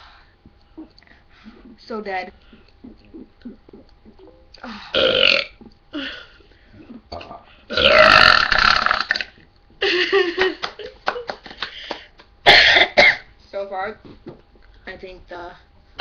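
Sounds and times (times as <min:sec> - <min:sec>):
person belching loudly: 0:02.8 - 0:05.7, 0:07.1 - 0:09.4.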